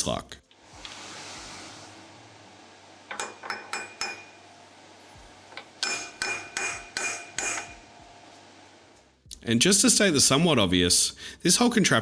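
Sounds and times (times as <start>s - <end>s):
hammer tapping metal rotor: 3.1s - 8.1s.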